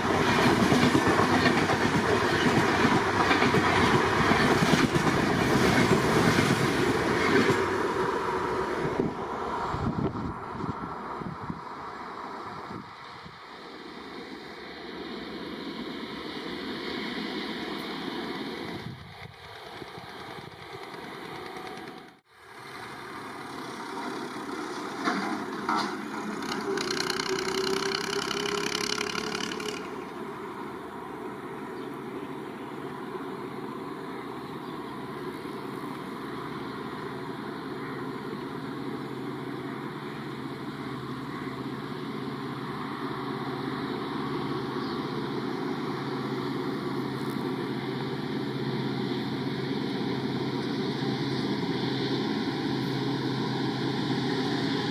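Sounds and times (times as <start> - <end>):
diesel locomotive engine humming: 0.0 - 54.9.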